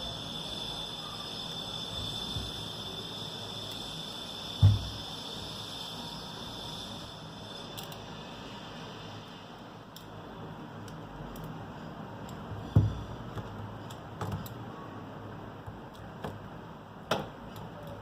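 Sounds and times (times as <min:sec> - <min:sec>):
steady background hum: 0:00.0 - 0:18.0
tools and parts clicking: 0:07.8 - 0:08.0.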